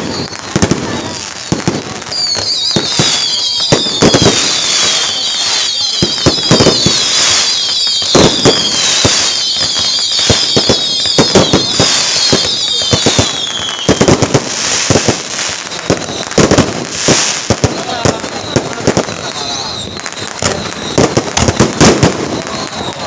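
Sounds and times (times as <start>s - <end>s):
firecrackers banging: 0.0s - 23.0s
high wavering whistle sliding down: 0.0s - 23.0s.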